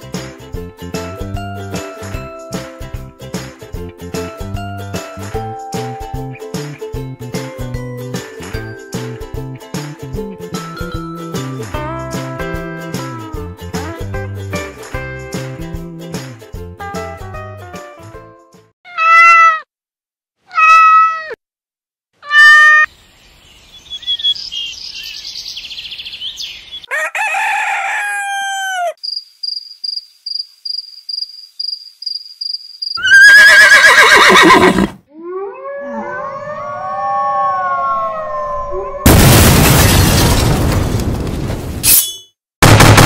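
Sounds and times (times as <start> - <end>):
cat meowing: 18.9 - 19.7, 20.5 - 21.4, 22.2 - 22.9, 33.0 - 39.1.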